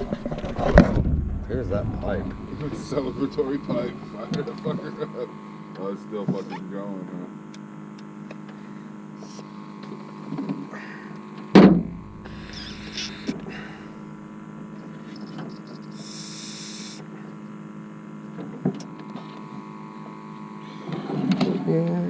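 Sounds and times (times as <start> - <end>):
steady electrical hum: 0.0 - 22.0
loud knock: 0.6 - 2.7, 11.6 - 13.5
short hissing bursts: 12.2 - 14.1, 15.9 - 17.1.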